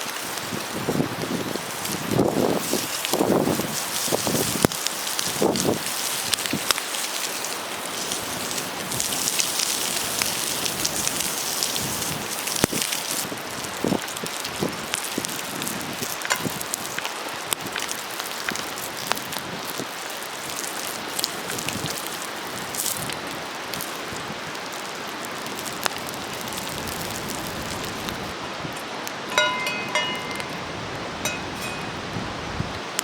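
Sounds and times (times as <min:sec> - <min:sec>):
small crackles and pops: 0:00.0 - 0:29.2
food sizzling on a griddle: 0:00.0 - 0:32.7
ringing metal clink: 0:29.3 - 0:30.6, 0:31.2 - 0:32.0.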